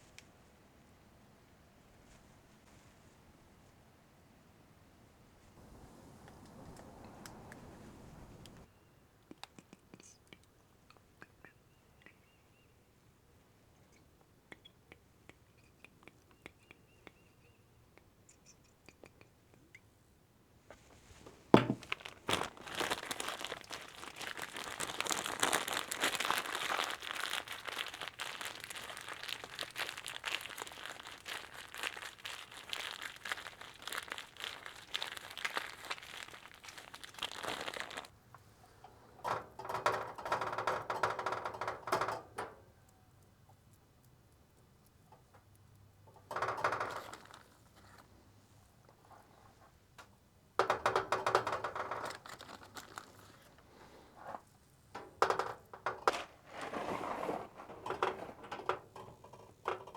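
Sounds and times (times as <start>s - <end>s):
dense crackling and crinkling: 5.4s - 8.7s, 20.6s - 38.4s, 46.0s - 59.9s.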